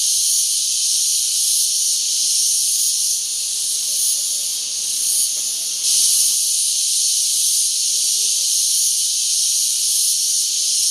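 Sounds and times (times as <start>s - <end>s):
shrill insects buzzing: 0.0s - 10.9s.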